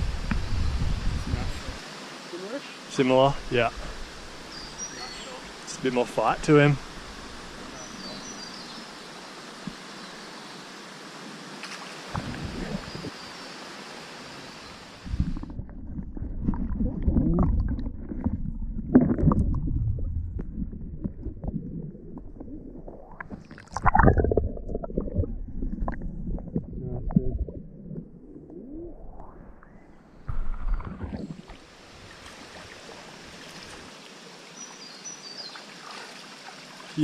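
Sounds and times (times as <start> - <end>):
creek water rushing: 1.4 - 15.2, 31.2 - 37.0
muffled water rumbling: 12.1 - 13.1, 15.0 - 33.9.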